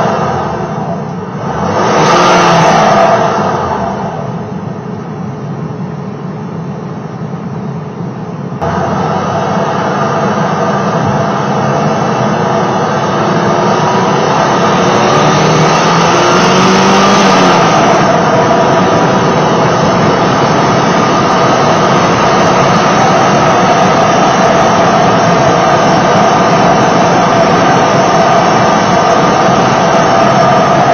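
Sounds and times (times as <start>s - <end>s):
car engine revving: 0.0s - 5.0s, 8.6s - 30.9s
supercharger whine: 0.0s - 30.9s.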